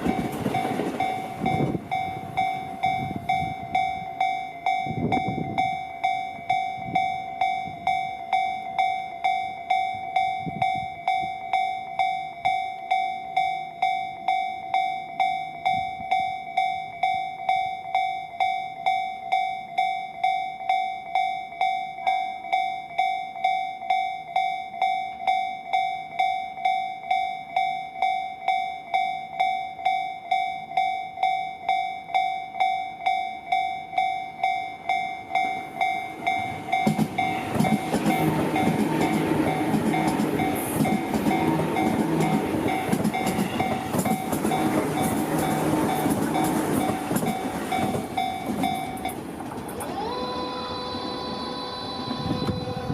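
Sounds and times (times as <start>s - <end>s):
electric train passing: 0.0s - 21.3s, 30.7s - 52.9s
level-crossing bell ringing: 0.0s - 52.9s.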